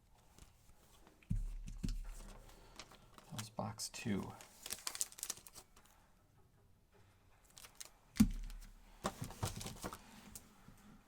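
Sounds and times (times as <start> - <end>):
packaging clicks and rustling: 2.0 - 3.5, 4.2 - 5.9, 7.4 - 10.4.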